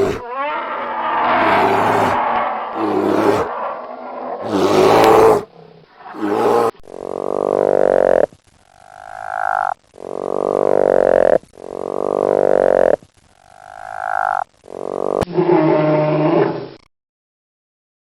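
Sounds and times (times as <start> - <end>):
animal calling: 0.0 - 7.2.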